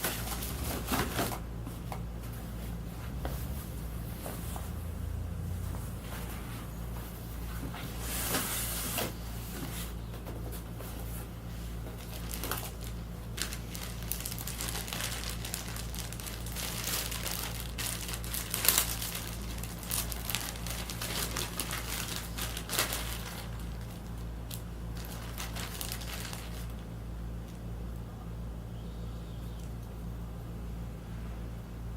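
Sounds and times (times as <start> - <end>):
packing material crinkling: 0.0 - 1.5, 10.5 - 26.8
steady low hum: 0.0 - 31.9.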